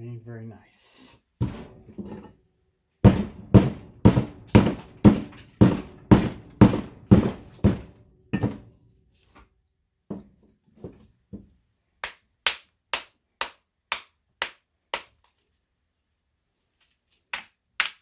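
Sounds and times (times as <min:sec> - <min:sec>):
hammer striking metal case: 0:01.4 - 0:02.3, 0:03.0 - 0:08.7.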